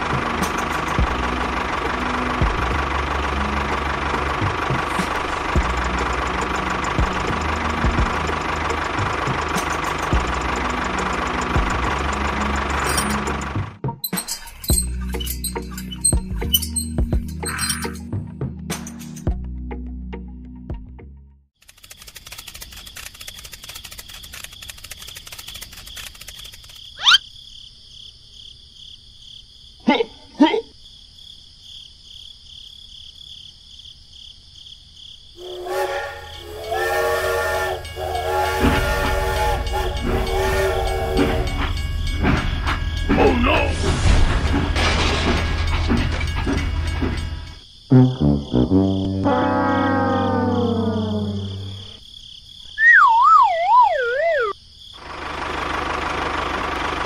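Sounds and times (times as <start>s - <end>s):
insects trilling: 21.7s - 37.4s, 47.6s - 55.1s
rising whistle-like sweep: 52.8s - 54.6s.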